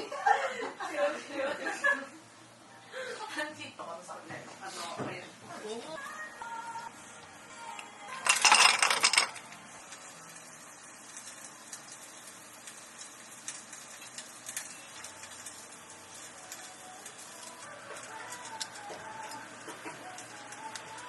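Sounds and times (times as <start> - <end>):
utensils and dishware clinking: 8.2 - 9.6
rattling clatter: 8.3 - 9.3.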